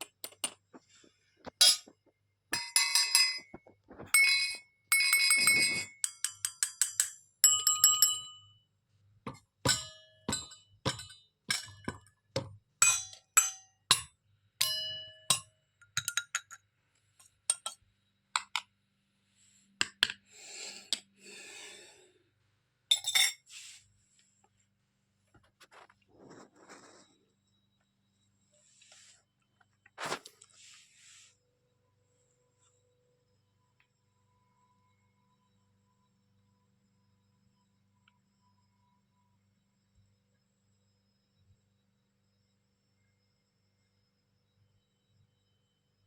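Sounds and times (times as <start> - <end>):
toy kitchen pieces clinking: 2.6 - 3.6, 4.2 - 8.3, 12.8 - 16.6, 17.2 - 17.8, 22.9 - 23.4.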